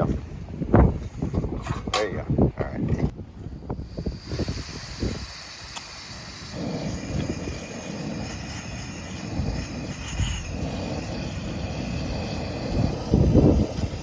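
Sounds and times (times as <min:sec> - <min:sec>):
gas stove burner rushing: 0:03.8 - 0:14.0.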